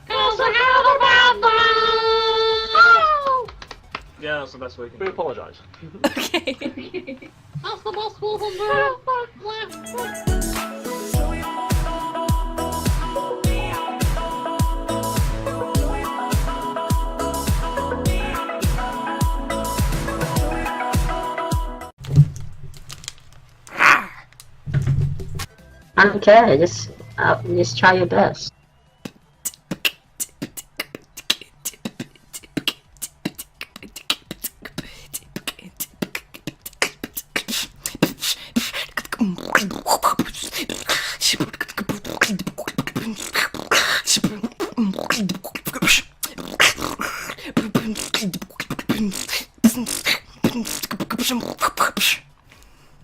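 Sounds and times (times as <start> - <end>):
pitched vocal sounds: 8.2 - 21.9, 23.7 - 24.3, 26.3 - 52.3
percussive mouth clicks: 29.0 - 52.3.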